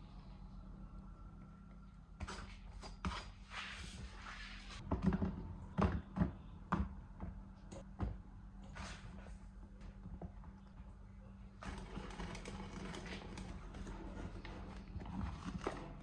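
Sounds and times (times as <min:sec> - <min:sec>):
objects knocking and clattering: 0:04.8 - 0:08.2.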